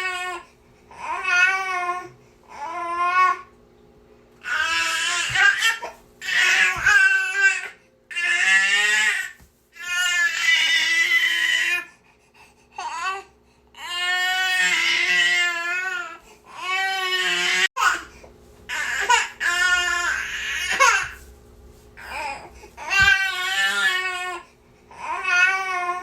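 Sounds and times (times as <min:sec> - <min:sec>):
infant crying: 0:04.4 - 0:11.9, 0:12.8 - 0:18.1, 0:18.7 - 0:21.2, 0:22.0 - 0:26.0.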